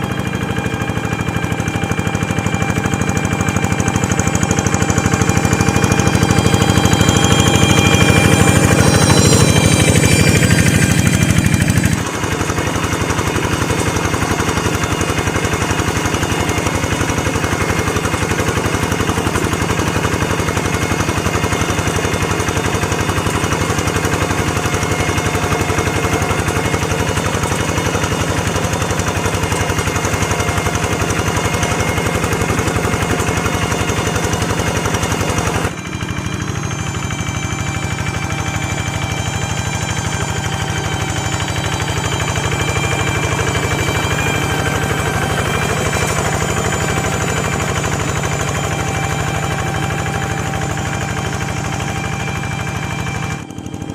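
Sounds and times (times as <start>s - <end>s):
hand tractor engine chugging: 0.0s - 53.9s.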